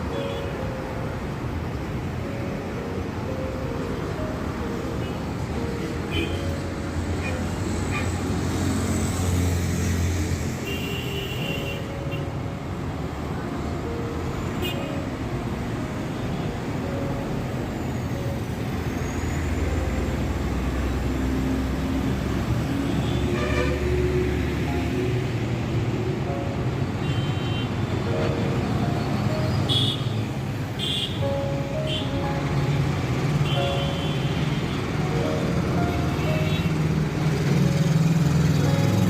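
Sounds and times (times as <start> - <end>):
road traffic passing: 0.0 - 39.0
vehicle horn toots: 23.1 - 23.9.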